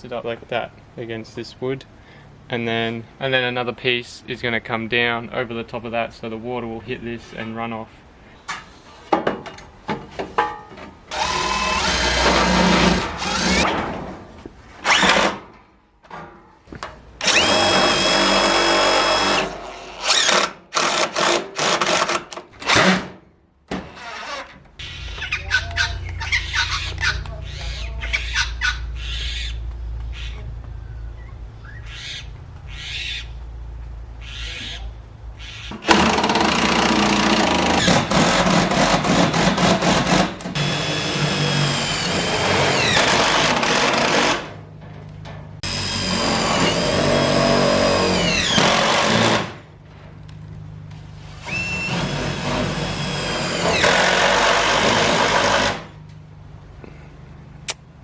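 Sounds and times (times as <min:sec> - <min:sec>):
power drill motor whining: 0:11.1 - 0:13.6, 0:17.2 - 0:20.4.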